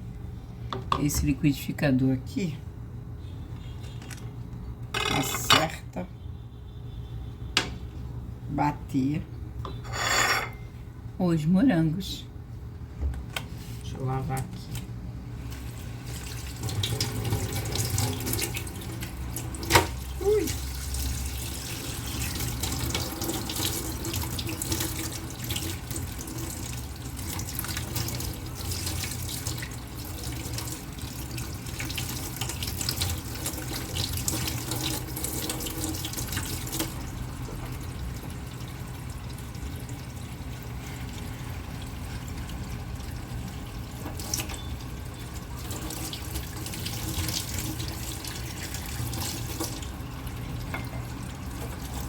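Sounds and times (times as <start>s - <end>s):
tap water splashing into sink: 16.1s - 38.0s.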